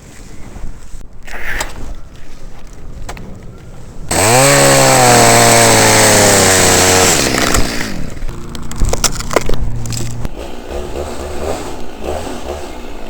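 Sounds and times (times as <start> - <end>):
chainsaw engine revving and idling: 4.1 - 8.6, 9.8 - 13.0.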